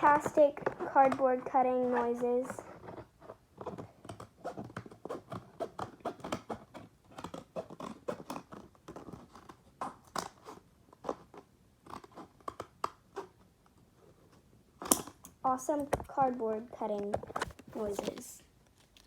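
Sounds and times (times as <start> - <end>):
cardboard being cut: 0.0 - 13.4.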